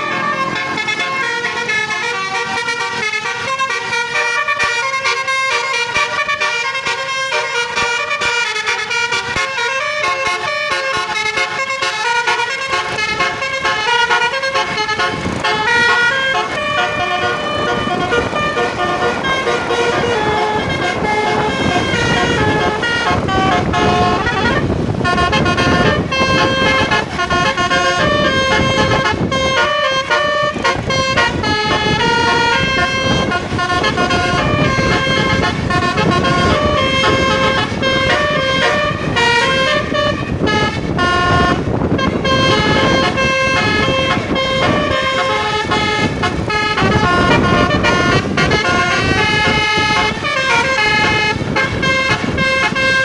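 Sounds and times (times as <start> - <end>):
bus horn tooting a tune: 0.0 - 53.0
steady rushing noise: 8.9 - 53.0.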